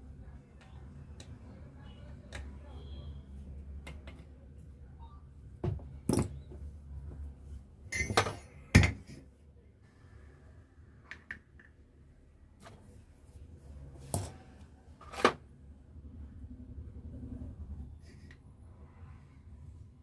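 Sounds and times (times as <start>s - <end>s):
metal tools clinking on workbench: 7.9s - 9.1s.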